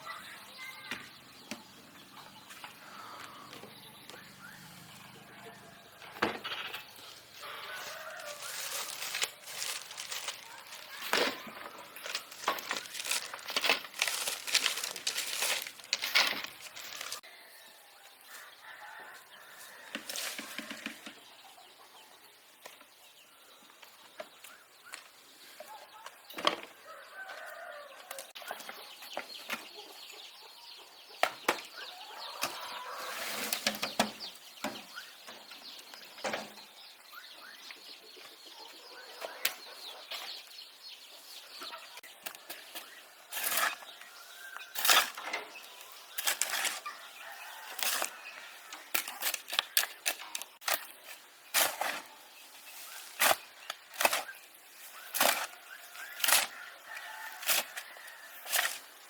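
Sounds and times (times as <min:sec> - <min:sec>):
chickens clucking: 0:00.0 - 0:17.3, 0:23.6 - 0:59.0.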